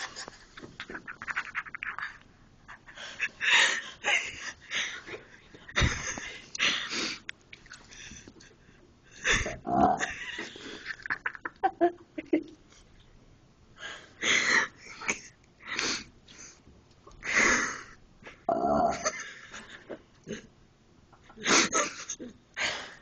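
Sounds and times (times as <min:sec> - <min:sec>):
person burping: 0:09.4 - 0:10.2, 0:18.5 - 0:19.1
breathing: 0:13.8 - 0:16.6.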